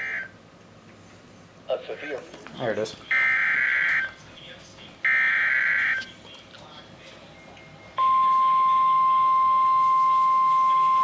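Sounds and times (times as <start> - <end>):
faint radio hiss: 1.2 - 3.2, 4.0 - 5.1
steady alarm beep: 3.1 - 4.1, 5.1 - 6.0, 7.9 - 11.0.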